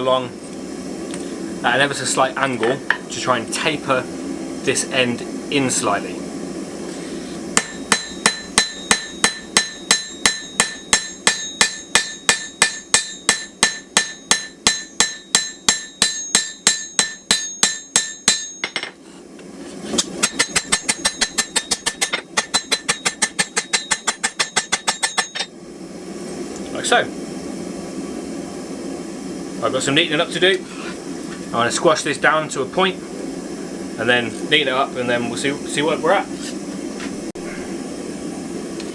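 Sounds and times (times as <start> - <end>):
hammer striking steel on anvil: 7.6 - 19.0, 20.0 - 25.5.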